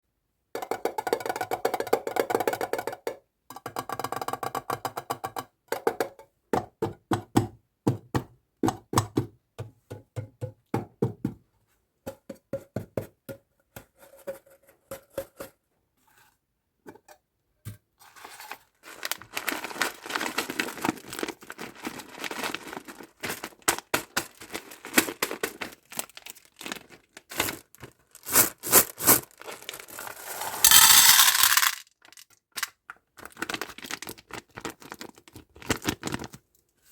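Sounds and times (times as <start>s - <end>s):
plastic wrappers crinkling and tearing: 18.8s - 30.6s, 33.2s - 36.4s.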